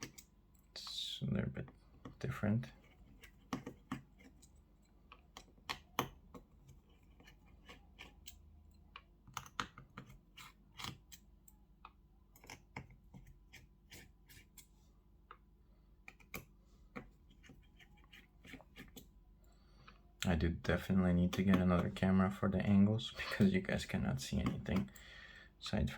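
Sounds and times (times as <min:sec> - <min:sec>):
small screwdriver clicks and taps: 0:07.6 - 0:11.2.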